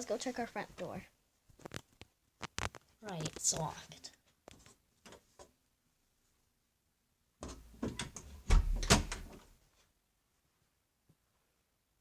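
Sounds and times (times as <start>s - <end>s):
clattering knocks and clicks: 7.4s - 9.4s
heavy thump: 8.5s - 9.3s.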